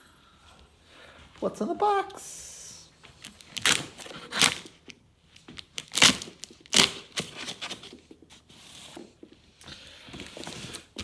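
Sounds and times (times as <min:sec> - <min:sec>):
tape and cardboard scraping: 0:03.2 - 0:09.6, 0:10.2 - 0:11.0.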